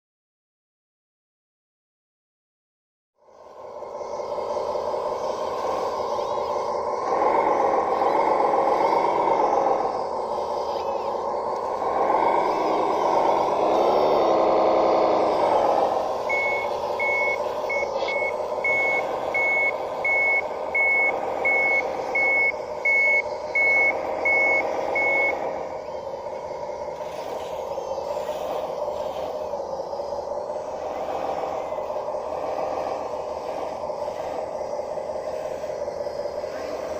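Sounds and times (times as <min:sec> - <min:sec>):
toy bulldozer mechanical drone: 0:03.2 - 0:36.9
reversing alarm beeps: 0:15.3 - 0:25.8.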